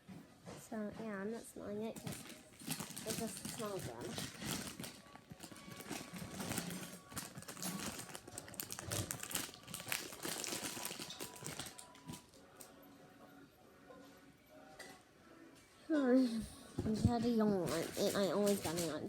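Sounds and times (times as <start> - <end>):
plastic packaging crinkling: 1.9 - 12.7, 17.6 - 19.0.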